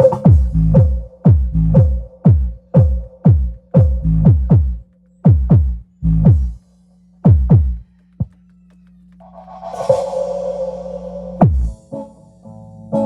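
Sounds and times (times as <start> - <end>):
electronic dance music: 0.0 - 6.6, 7.2 - 7.8, 9.2 - 12.1
steady low hum: 0.0 - 12.7.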